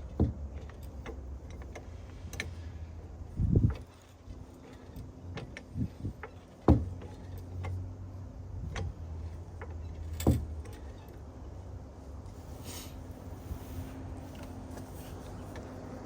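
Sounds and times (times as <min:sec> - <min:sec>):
car jack metal knocks: 0:06.6 - 0:07.2.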